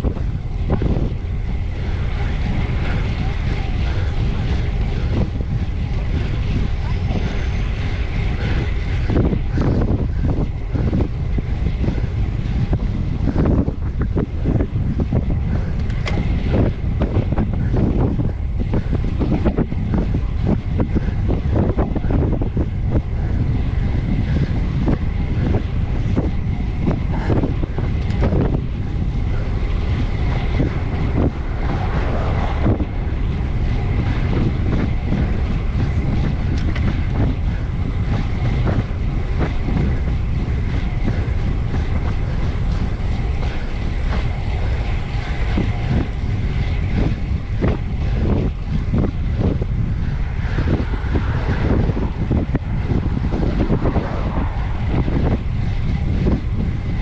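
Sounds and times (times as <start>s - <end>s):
tyre and road noise: 0.0s - 57.0s
wind buffeting microphone: 0.0s - 57.0s
bicycle knocks and rattles: 8.3s - 31.4s, 32.7s - 50.9s.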